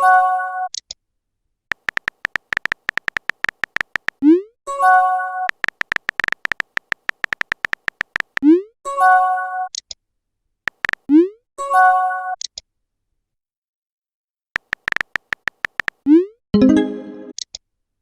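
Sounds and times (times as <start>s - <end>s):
keyboard tap clicks: 1.7s - 4.2s, 5.5s - 8.4s, 10.7s - 11.1s, 14.6s - 16.0s
message chime chord: 16.6s - 17.3s.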